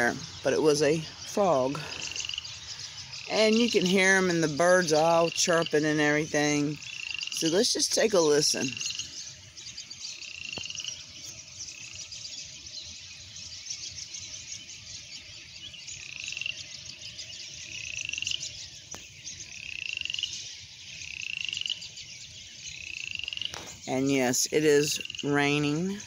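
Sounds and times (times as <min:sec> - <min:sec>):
frog rising trills: 0:00.0 - 0:04.4, 0:05.0 - 0:09.1
birds chirping: 0:00.0 - 0:26.0
frogs chirring: 0:00.0 - 0:26.0.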